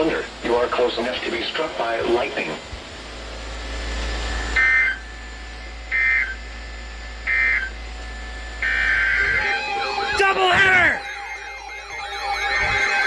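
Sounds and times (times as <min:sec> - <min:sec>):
radio hiss with low hum: 0:00.0 - 0:03.0, 0:07.2 - 0:13.0
screechy digital data bursts: 0:08.6 - 0:13.0.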